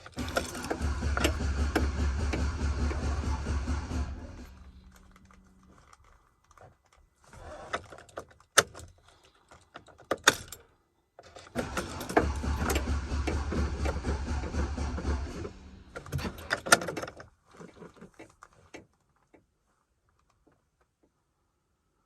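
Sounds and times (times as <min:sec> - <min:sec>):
keys jingling: 0:00.0 - 0:01.3
car engine shutting off: 0:00.0 - 0:06.0, 0:11.6 - 0:16.6
engine cranking and starting: 0:00.0 - 0:06.3, 0:11.3 - 0:18.2.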